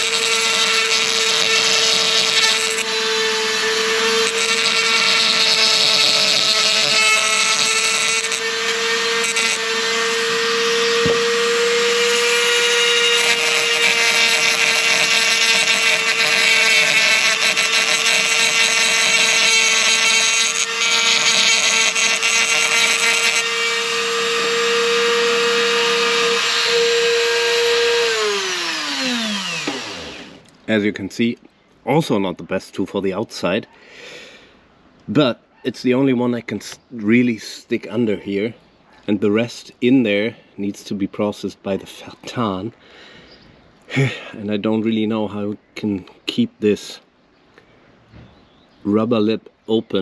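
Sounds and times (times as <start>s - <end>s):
rotary tool grinding metal: 0.0s - 30.5s
rotary tool spinning down: 24.8s - 30.4s.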